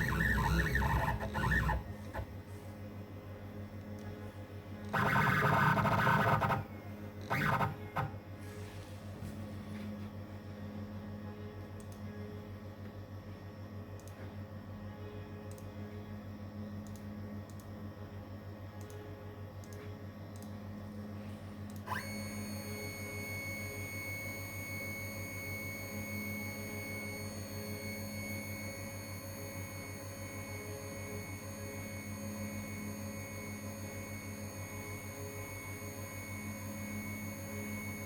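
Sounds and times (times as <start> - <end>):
milling machine humming: 0.0 - 2.3
spindle high-pitched whine: 0.0 - 2.3, 4.8 - 8.2, 21.9 - 38.0.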